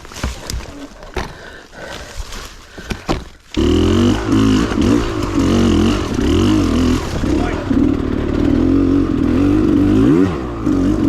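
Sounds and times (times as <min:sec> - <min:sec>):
dirt bike engine revving: 0:03.5 - 0:11.0.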